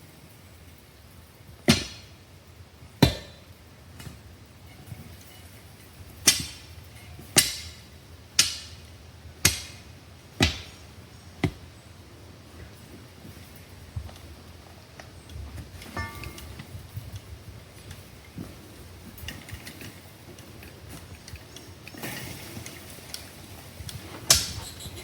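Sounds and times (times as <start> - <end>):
sharp ringing knocks: 15.9 - 16.6.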